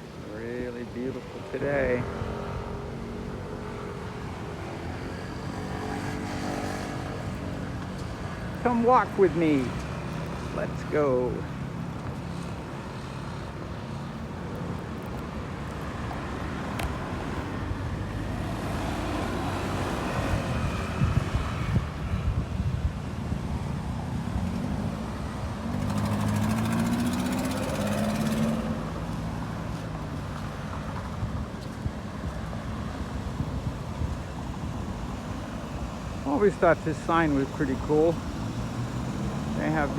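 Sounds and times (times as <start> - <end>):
road traffic rumbling: 0.0 - 39.9
vehicle passing close: 23.8 - 29.7, 35.9 - 39.9.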